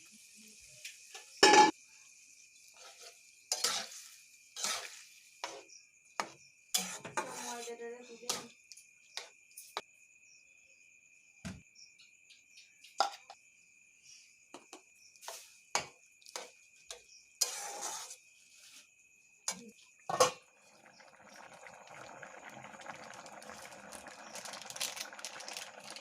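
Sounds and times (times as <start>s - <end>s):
utensils clinking on pots and dishes: 1.4s - 1.7s.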